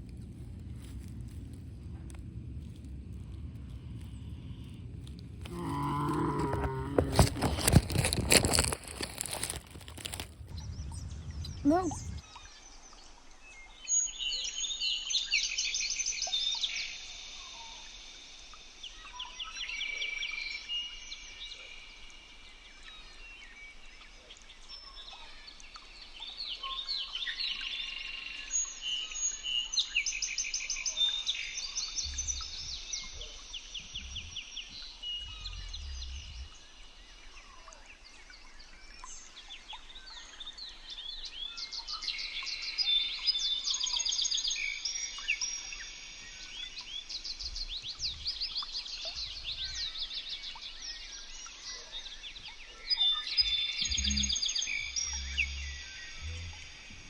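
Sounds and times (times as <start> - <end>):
birds chirping and trilling: 31.8 - 37.2, 46.6 - 57.0
low thuds: 32.1 - 36.6, 53.5 - 57.0.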